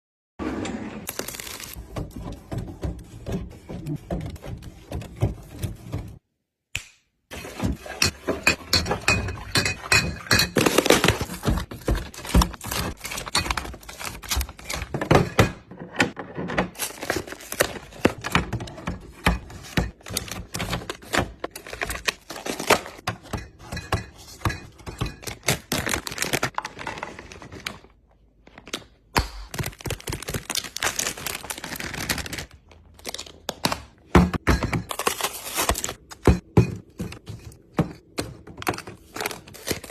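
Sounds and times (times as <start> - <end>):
containers knocking and clattering: 7.4 - 14.1.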